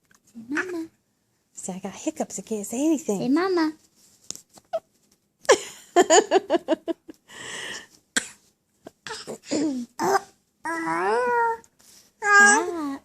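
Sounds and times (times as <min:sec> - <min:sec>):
baby fake coughing: 0:09.0 - 0:10.3.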